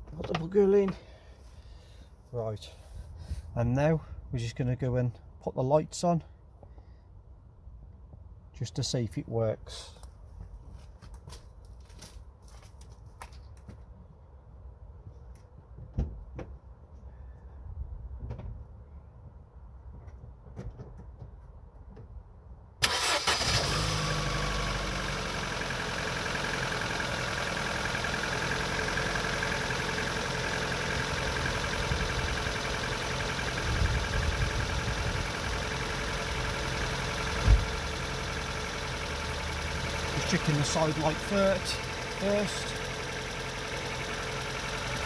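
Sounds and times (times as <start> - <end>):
car engine starting and idling: 22.8 - 45.0
short thump: 37.4 - 37.7.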